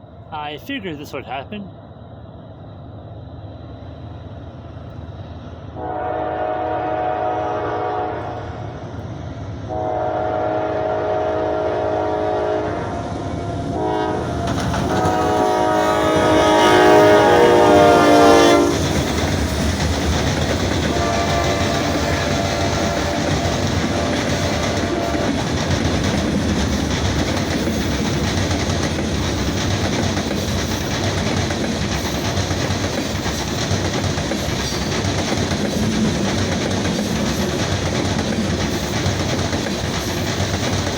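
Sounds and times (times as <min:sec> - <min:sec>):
train rumble and wheel clatter: 0:00.0 - 0:40.9
locomotive horn blasts: 0:05.8 - 0:08.4, 0:09.7 - 0:13.0, 0:13.8 - 0:18.9, 0:20.9 - 0:25.3.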